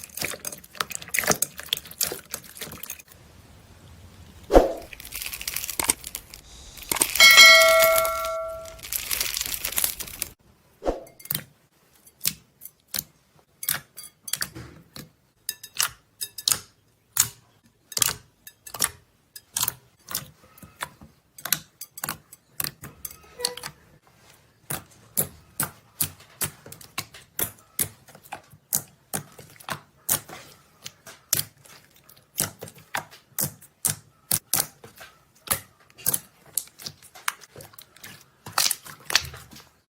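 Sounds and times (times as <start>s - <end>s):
bell-like ding: 7.2s - 8.8s.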